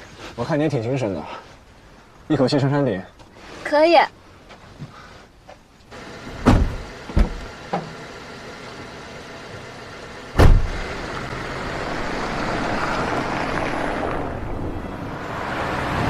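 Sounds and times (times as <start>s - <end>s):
car moving off: 5.9s - 16.0s
car doors shutting: 6.2s - 8.0s, 10.3s - 11.0s.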